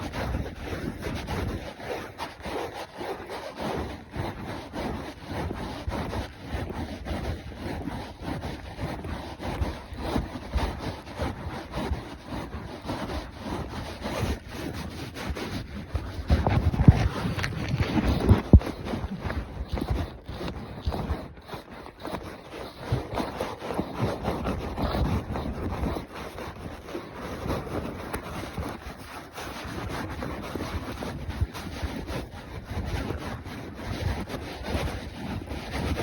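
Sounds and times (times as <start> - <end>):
wind on microphone: 0.0 - 36.0
horse hoofbeats: 16.3 - 21.0.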